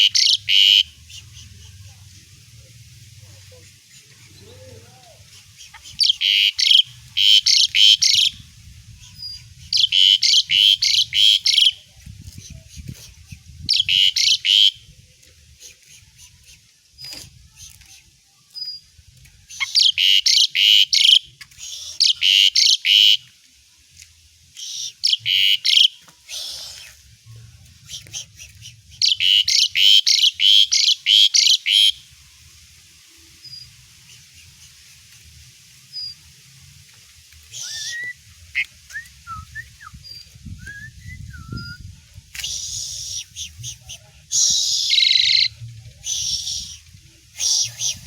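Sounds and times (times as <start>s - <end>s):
starling chattering song: 0.0s - 14.9s, 27.7s - 32.0s, 37.4s - 48.0s.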